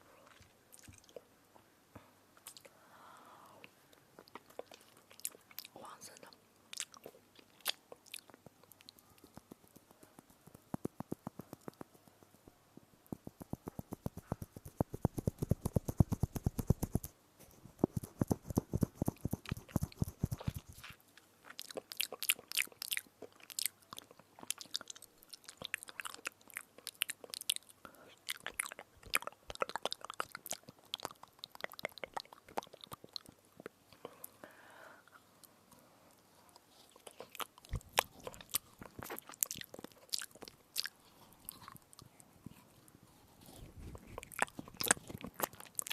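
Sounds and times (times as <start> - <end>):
biting and chewing crunchy spoon: 17.9 - 33.4, 36.8 - 42.6, 43.4 - 45.9.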